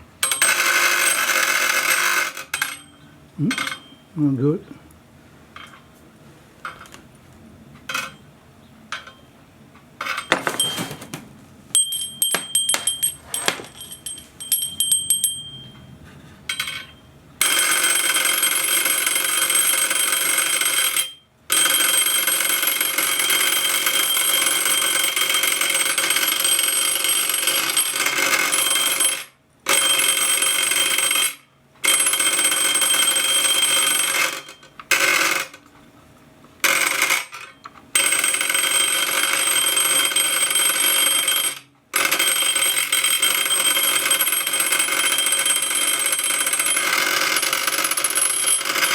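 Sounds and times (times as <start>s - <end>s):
electric bell ringing: 10.1s - 22.3s.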